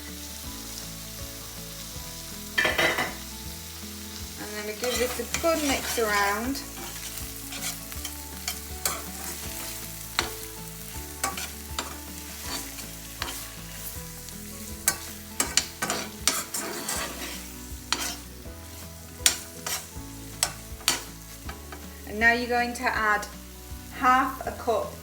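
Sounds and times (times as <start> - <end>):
frying sizzle: 0.0 - 25.0
utensil scraping and knocking pan: 4.7 - 10.4, 11.2 - 13.8, 14.8 - 18.5, 19.1 - 21.8.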